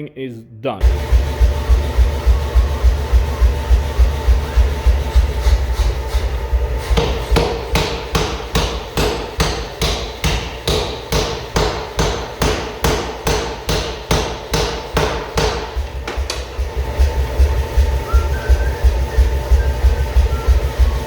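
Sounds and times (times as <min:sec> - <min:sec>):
hammer striking hot steel on anvil: 0:05.4 - 0:16.6.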